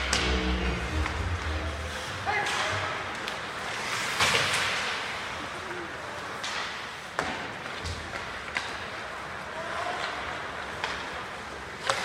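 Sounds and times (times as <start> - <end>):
hockey sticks clacking on puck: 2.4 - 5.2, 6.2 - 12.0.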